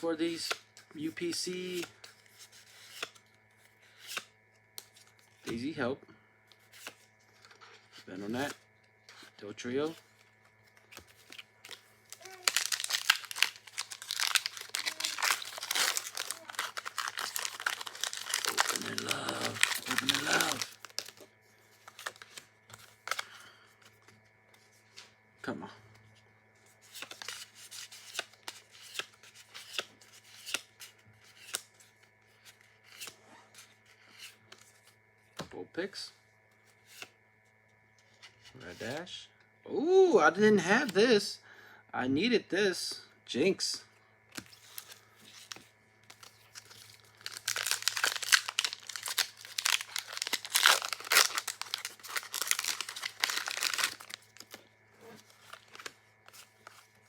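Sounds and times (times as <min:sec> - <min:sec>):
trading cards sliding: 0:01.2 - 0:03.2, 0:10.7 - 0:21.2
plastic packaging crackling: 0:10.9 - 0:21.3, 0:44.4 - 0:57.0.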